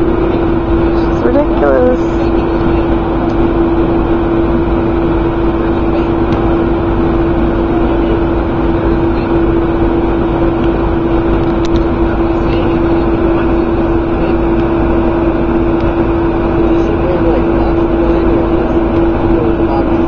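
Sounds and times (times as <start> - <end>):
boat engine humming: 0.0 - 20.0.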